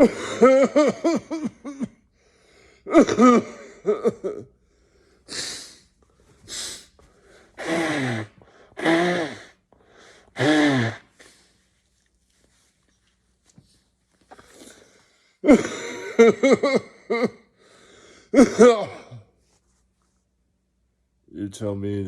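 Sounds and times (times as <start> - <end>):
person coughing: 0.0 - 2.0, 2.9 - 4.5, 7.6 - 9.6, 10.4 - 11.1, 15.4 - 17.5, 18.3 - 19.3
wheezing breaths: 4.5 - 11.8, 17.6 - 18.4
breathy gasps: 17.6 - 18.4.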